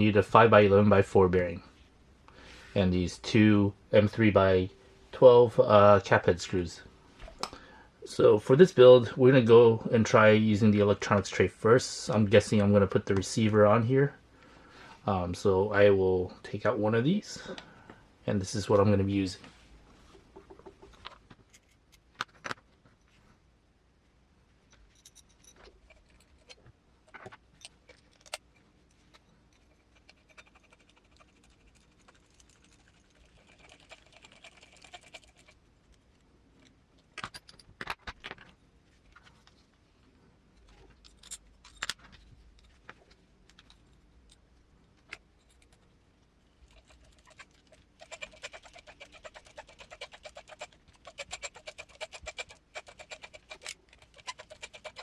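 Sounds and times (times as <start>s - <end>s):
small metal parts clicking: 24.7s - 37.8s, 40.6s - 42.8s, 46.6s - 55.0s
screwdriver whirring: 46.7s - 55.0s.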